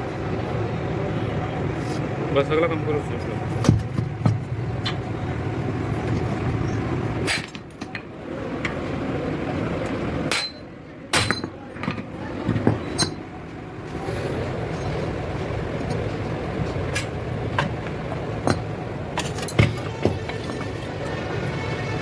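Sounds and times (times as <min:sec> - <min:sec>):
steady background hum: 0:00.0 - 0:22.0
metal tools knocking and clinking: 0:10.3 - 0:13.2, 0:18.4 - 0:20.9.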